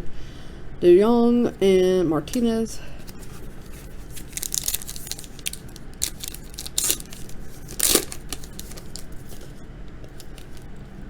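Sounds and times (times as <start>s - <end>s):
wrapper tearing and crinkling: 3.0s - 10.6s.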